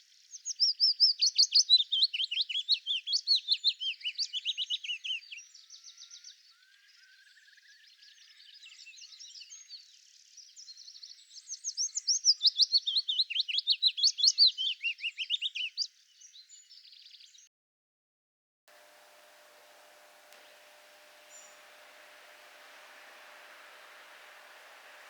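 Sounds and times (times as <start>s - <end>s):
songbird singing: 0.1s - 17.5s, 18.7s - 25.0s
faint hum with hiss: 18.7s - 25.0s.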